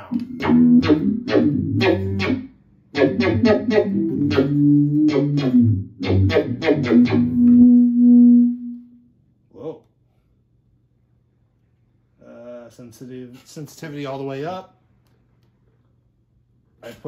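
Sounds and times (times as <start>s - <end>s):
synth-like electric guitar notes: 0.1s - 9.0s.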